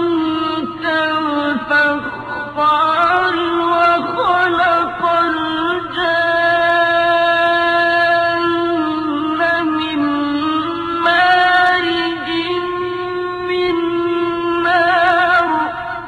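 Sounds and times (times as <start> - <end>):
man reciting melodically: 0.0 - 16.0.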